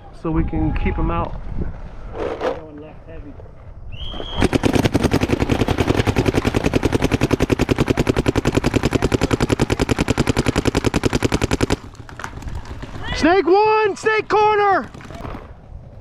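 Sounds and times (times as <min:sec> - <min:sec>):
paintball marker firing rapidly: 0:04.4 - 0:13.1, 0:14.8 - 0:15.5.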